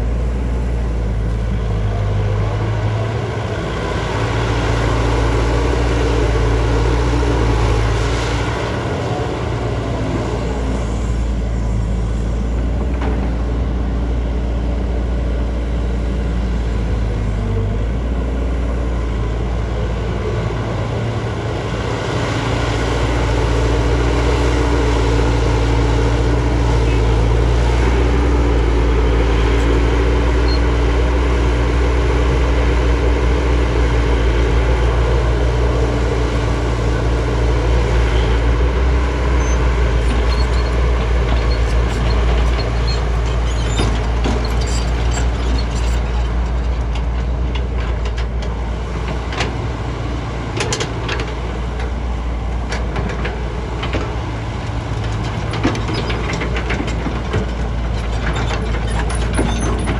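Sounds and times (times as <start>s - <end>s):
excavator diesel engine running: 0.0s - 59.9s
scattered clicks and knocks: 50.5s - 52.0s, 52.7s - 59.9s.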